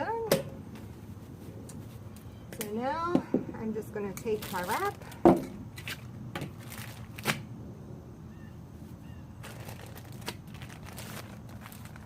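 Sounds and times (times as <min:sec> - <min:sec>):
tortilla wrap rustling: 0:04.3 - 0:07.5, 0:08.8 - 0:12.0.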